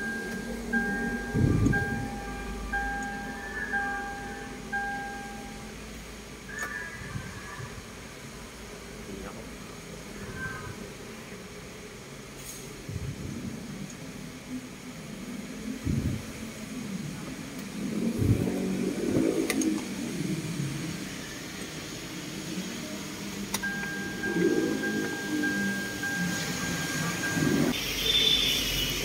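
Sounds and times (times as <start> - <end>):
thin steady beep: 0.0 - 5.8, 23.5 - 28.4
low mechanical rumble: 0.0 - 27.8
short hiss: 12.4 - 12.8
click: 19.5 - 19.8.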